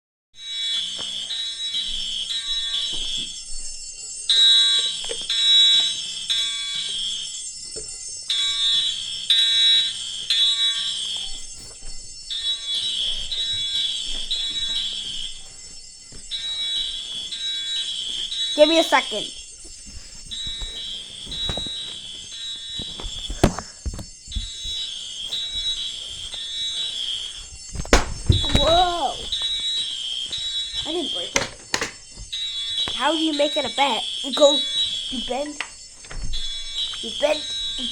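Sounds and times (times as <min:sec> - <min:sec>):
fire alarm shrill beeps: 0:00.4 - 0:37.9.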